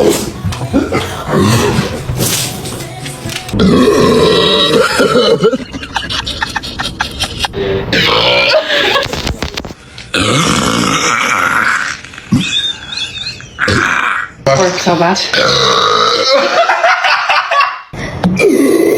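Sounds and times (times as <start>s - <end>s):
long burps: 3.6s - 5.6s, 10.1s - 12.5s, 15.4s - 16.6s.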